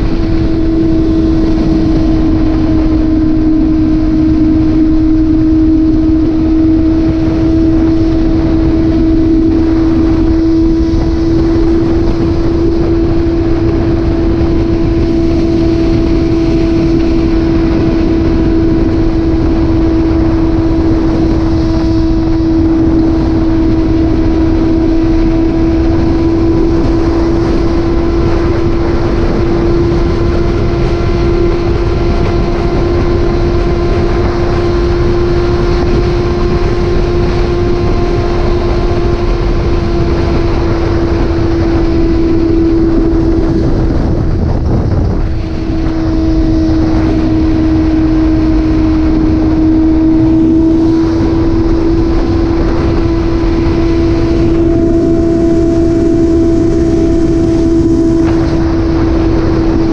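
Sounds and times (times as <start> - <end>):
motorcycle engine cruising: 0.0 - 59.9
wind rush on microphone: 0.0 - 59.9.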